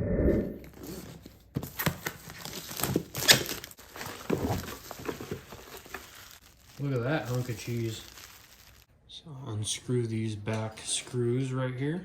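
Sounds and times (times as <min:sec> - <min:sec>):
packaging rustling: 0:00.8 - 0:08.9.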